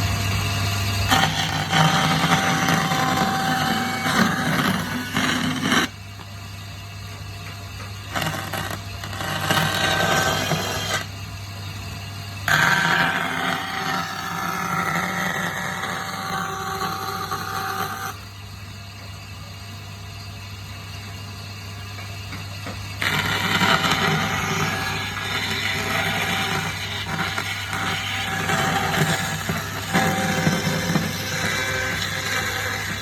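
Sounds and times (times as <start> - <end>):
power tool running: 0.0 - 6.0, 8.0 - 11.2, 23.0 - 33.0
steady low hum: 0.0 - 33.0.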